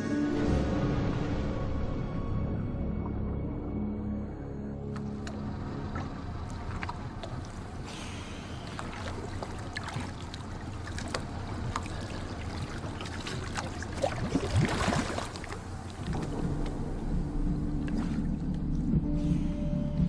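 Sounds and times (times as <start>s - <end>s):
background music: 0.0s - 6.6s, 16.1s - 20.0s
water sloshing around boat: 4.8s - 19.1s.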